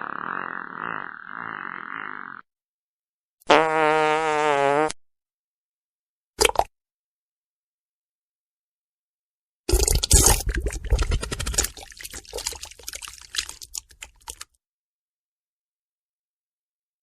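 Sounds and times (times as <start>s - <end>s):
long sputtering fart: 0.0s - 2.5s, 3.5s - 5.0s.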